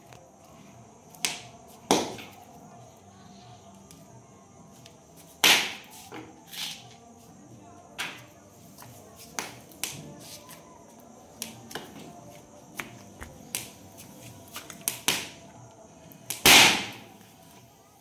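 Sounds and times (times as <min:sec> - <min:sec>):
firecrackers popping in fire: 0:01.1 - 0:02.5, 0:05.2 - 0:07.0, 0:08.0 - 0:10.7, 0:11.3 - 0:17.8.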